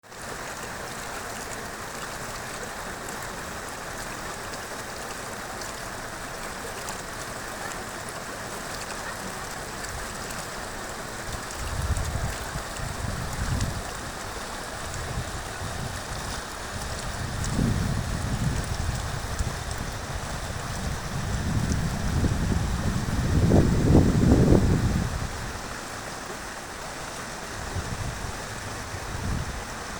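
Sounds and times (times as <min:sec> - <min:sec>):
river rushing: 0:00.0 - 0:29.9
wind buffeting microphone: 0:11.2 - 0:25.8, 0:27.5 - 0:29.9.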